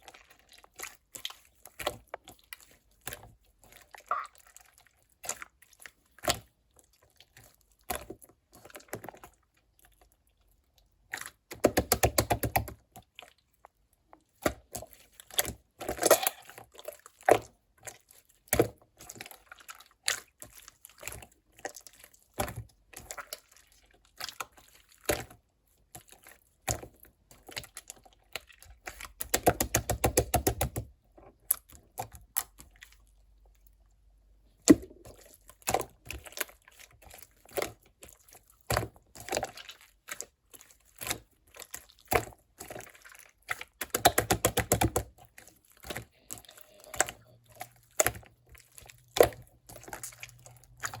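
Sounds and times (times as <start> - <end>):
hands squeezing slime: 0.0 - 51.0
wet clicks and pops: 43.8 - 45.1.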